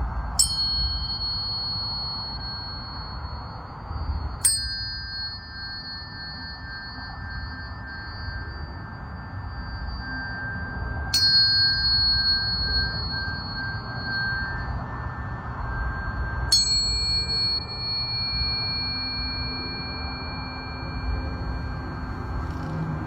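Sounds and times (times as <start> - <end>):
tuning forks ringing: 0.0 - 23.0.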